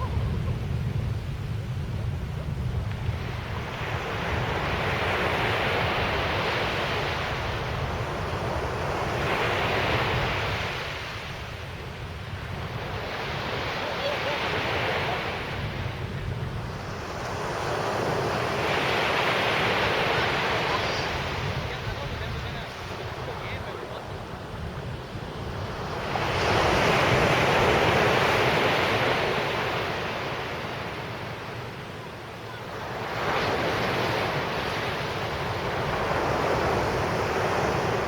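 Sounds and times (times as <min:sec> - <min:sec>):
wind on microphone: 0:00.0 - 0:30.4, 0:33.1 - 0:38.0
sea surf breaking: 0:00.0 - 0:31.6, 0:32.4 - 0:38.0.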